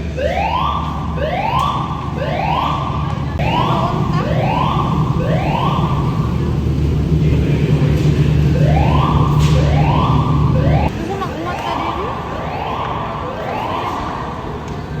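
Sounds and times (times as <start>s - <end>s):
low background noise: 0.0s - 15.0s
fire alarm whoop tone: 0.2s - 6.3s, 8.5s - 10.9s, 11.6s - 14.4s.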